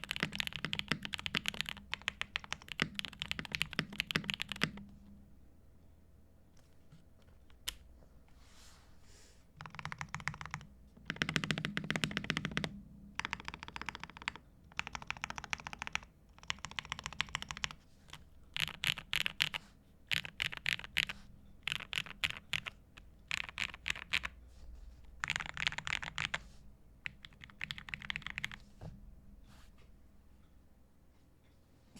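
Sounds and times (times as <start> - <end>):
mechanical keyboard typing: 0.0 - 4.8, 9.6 - 24.4, 25.2 - 26.4, 27.0 - 28.6.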